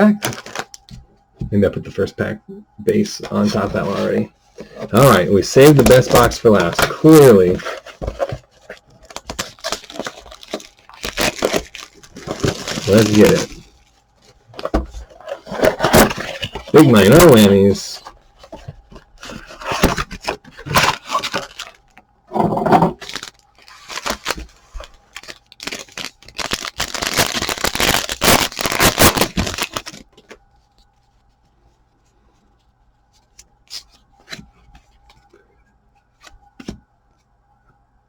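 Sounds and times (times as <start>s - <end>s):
paper and foil tearing: 0.1s - 0.7s, 5.0s - 8.1s, 9.0s - 13.7s, 20.7s - 21.8s, 23.0s - 30.0s.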